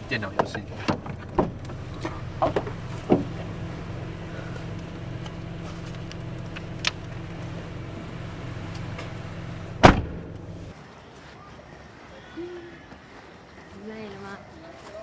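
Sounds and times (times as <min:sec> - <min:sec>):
car engine rumble inside cabin: 0:00.0 - 0:10.7.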